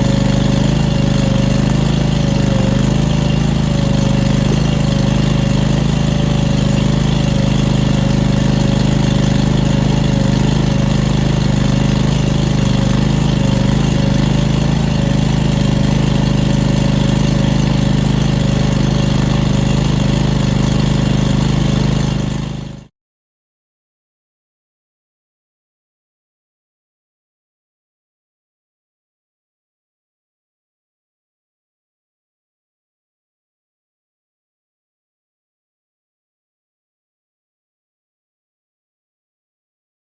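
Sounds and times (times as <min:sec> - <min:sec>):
engine running steadily: 0:00.0 - 0:22.9.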